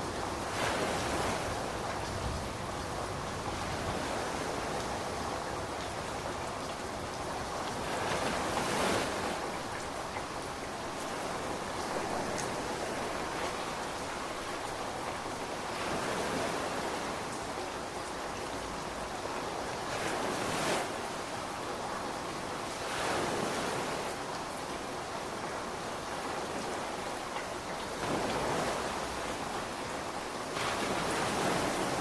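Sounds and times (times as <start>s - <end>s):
ocean waves washing in: 0.0s - 32.0s
rain hiss: 0.0s - 32.0s.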